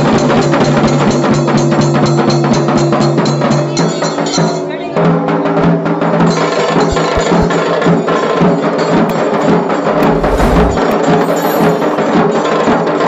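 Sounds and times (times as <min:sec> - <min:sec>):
dhol beats: 0:06.9 - 0:07.5.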